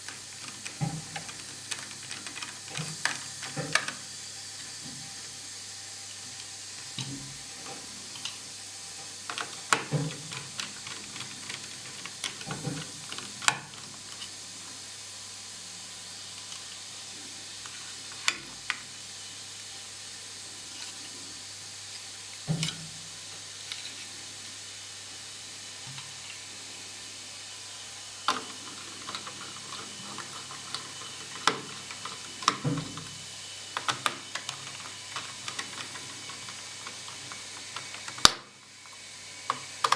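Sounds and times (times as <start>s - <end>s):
screwdriver clicks and taps: 33.8s - 38.5s, 39.5s - 39.9s.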